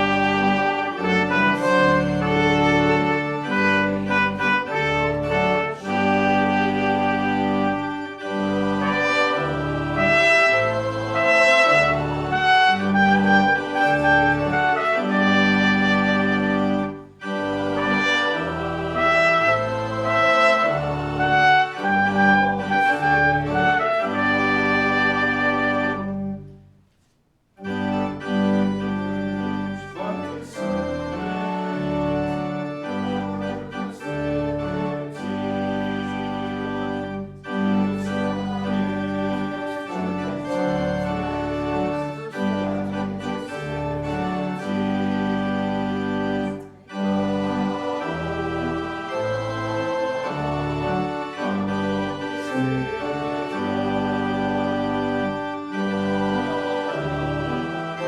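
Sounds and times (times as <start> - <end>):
church organ playing chords: 0.0 - 26.7, 27.6 - 58.0.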